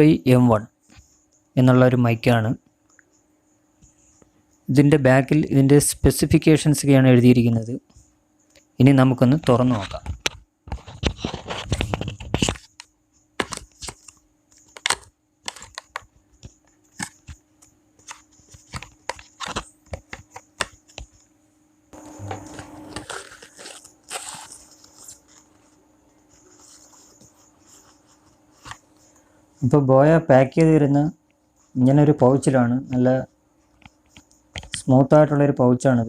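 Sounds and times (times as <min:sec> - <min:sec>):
packaging clicks and knocks: 0:10.0 - 0:17.4, 0:18.0 - 0:21.2
cardboard tearing and rustling: 0:22.4 - 0:25.6
packaging crinkling: 0:22.4 - 0:25.7.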